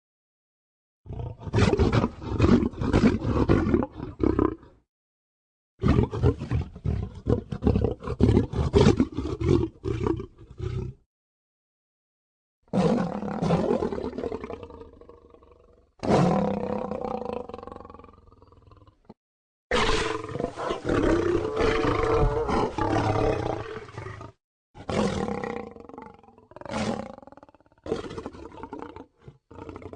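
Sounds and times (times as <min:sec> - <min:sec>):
cartoon lion roar: 0:01.1 - 0:04.8, 0:19.7 - 0:29.9.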